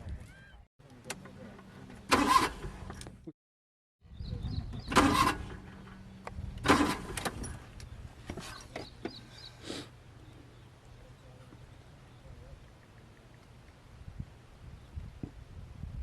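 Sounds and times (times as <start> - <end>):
car starter cranking: 2.0 - 3.2, 4.7 - 7.6.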